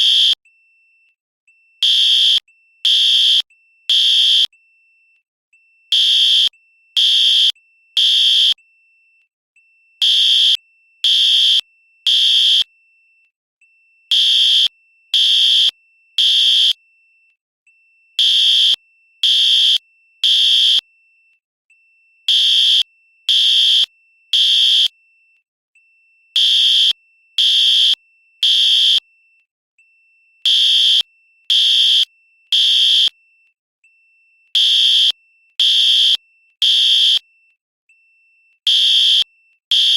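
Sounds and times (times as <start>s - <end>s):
fire alarm beeping: 0.0s - 0.4s, 1.8s - 4.5s, 5.9s - 8.6s, 10.0s - 12.7s, 14.1s - 16.8s, 18.2s - 20.8s, 22.3s - 24.9s, 26.4s - 29.0s, 30.5s - 33.1s, 34.6s - 37.2s, 38.7s - 39.9s.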